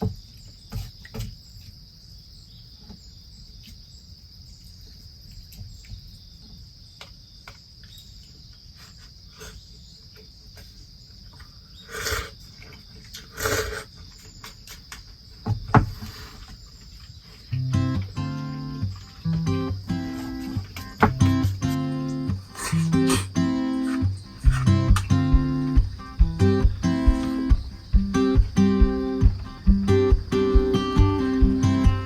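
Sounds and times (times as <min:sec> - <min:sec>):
crickets chirring: 0:00.0 - 0:32.0
acoustic guitar music: 0:17.5 - 0:32.0
sharp knock: 0:24.4 - 0:32.0.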